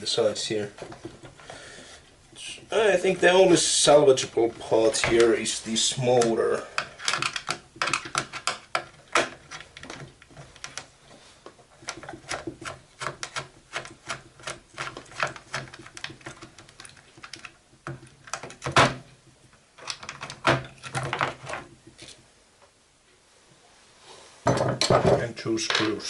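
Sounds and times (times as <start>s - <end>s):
plastic and metal parts clicking: 6.2s - 10.9s, 19.8s - 22.2s.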